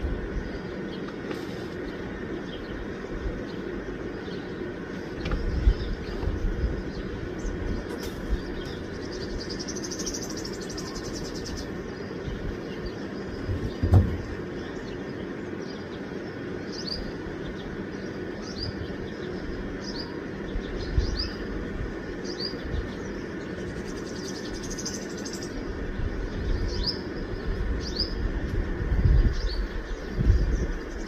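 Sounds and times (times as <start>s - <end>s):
steady low rumble: 0.0s - 31.0s
small bird chirping: 1.8s - 21.6s, 22.2s - 28.2s.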